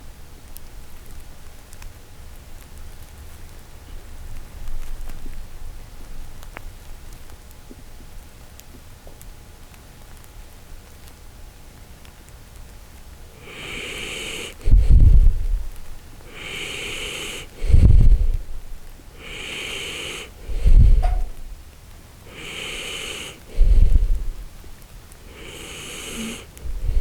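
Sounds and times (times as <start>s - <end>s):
dog snoring: 13.3s - 15.4s, 16.3s - 18.4s, 19.2s - 21.4s, 22.3s - 24.4s, 25.2s - 27.0s.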